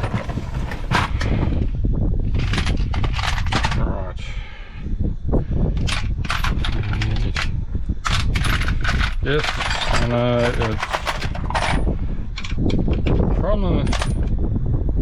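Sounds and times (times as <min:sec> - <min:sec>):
metal hand tools clattering: 0:00.0 - 0:01.3, 0:09.4 - 0:11.8.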